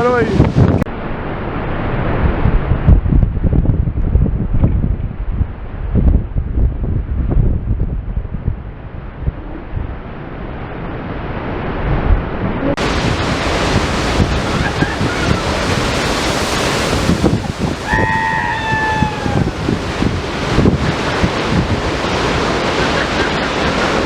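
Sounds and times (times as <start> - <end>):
storm waves breaking on rocks: 0.0 - 0.9, 12.7 - 24.0
wind buffeting microphone: 0.0 - 24.0
rushing hiss of water: 12.8 - 24.0.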